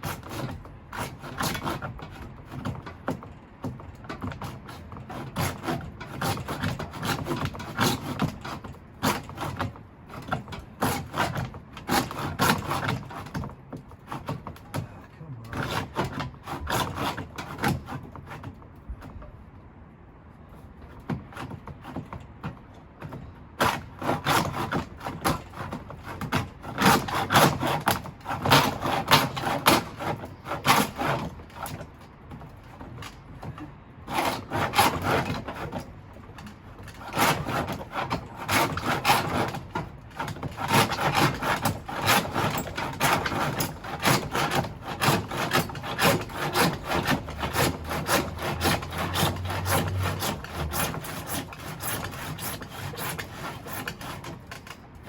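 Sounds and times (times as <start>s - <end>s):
handsaw cutting wood: 0.0s - 18.6s, 21.1s - 54.8s.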